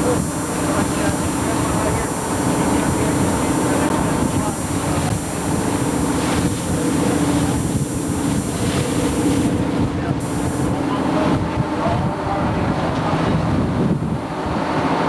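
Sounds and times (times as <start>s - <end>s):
water noise: 0.0s - 11.4s
wind noise: 0.0s - 15.0s.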